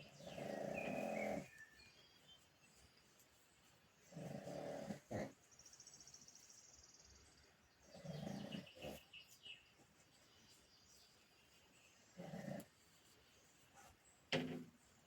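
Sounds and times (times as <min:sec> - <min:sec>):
dog snoring: 0:00.2 - 0:01.5.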